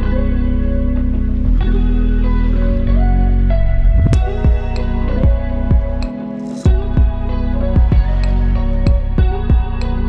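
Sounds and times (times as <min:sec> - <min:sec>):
soft instrumental music: 0:00.0 - 0:10.0.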